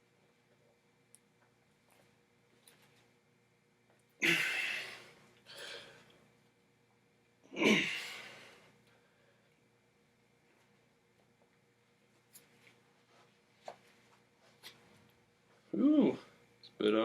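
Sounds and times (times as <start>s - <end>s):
man grunting: 4.2s - 5.0s, 7.6s - 8.3s
man exhaling forcefully: 4.2s - 5.9s, 7.6s - 8.6s.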